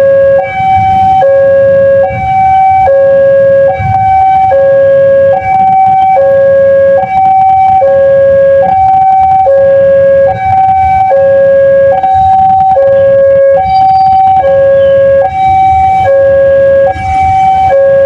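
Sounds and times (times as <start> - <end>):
level-crossing two-tone alarm: 0.0 - 18.0.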